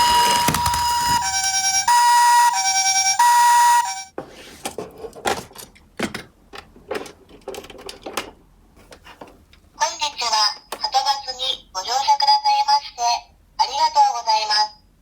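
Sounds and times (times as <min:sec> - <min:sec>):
two-tone ambulance siren: 0:00.0 - 0:04.1.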